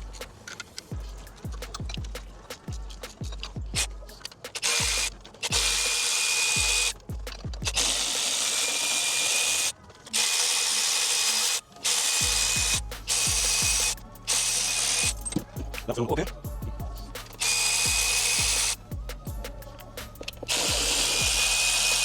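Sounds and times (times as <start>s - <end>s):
cordless drill motor whine: 4.6s - 7.0s, 7.6s - 15.4s, 17.4s - 18.8s, 20.4s - 22.0s.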